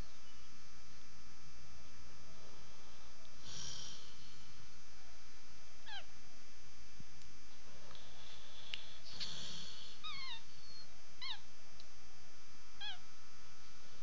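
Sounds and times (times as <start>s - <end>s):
pet snoring with squeaky whistles: 9.1s - 11.4s.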